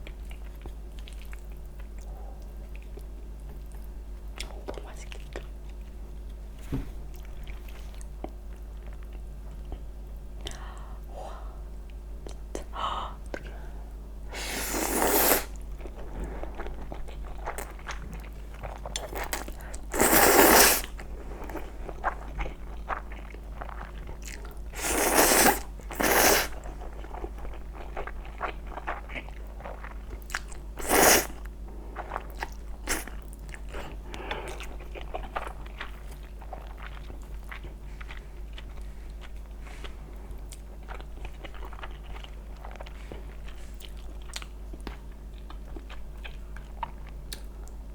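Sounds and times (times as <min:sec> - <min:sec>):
chewing with wet mouth clicks: 0:00.0 - 0:06.4, 0:11.9 - 0:13.5, 0:15.5 - 0:47.8
low steady hum: 0:00.0 - 0:47.9
noisy bites or slurps: 0:14.4 - 0:15.5, 0:19.9 - 0:20.9, 0:24.8 - 0:26.6, 0:30.8 - 0:31.4.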